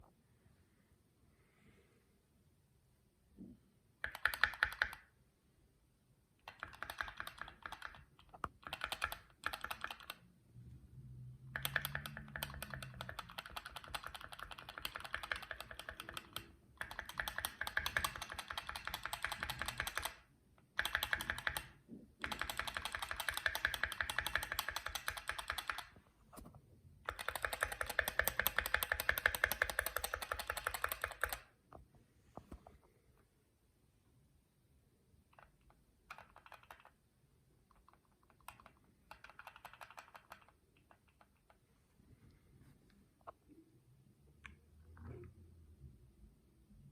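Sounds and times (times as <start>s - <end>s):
mechanical keyboard typing: 4.0s - 5.1s, 6.4s - 10.3s, 11.4s - 26.0s, 27.0s - 31.6s, 35.2s - 41.6s.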